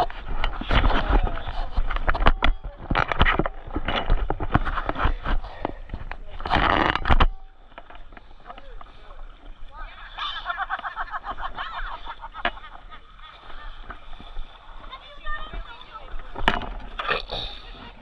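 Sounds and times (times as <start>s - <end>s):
low rumble on microphone: 0.0s - 9.8s
water splashing: 0.0s - 18.0s
knocks and clatters: 16.3s - 17.0s.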